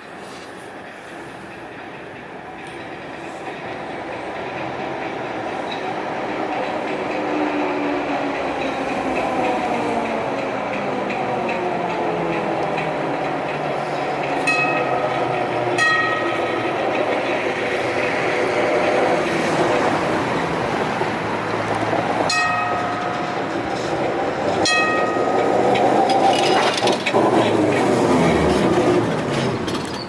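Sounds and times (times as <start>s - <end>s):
tram rumbling on rails: 0.0s - 30.0s.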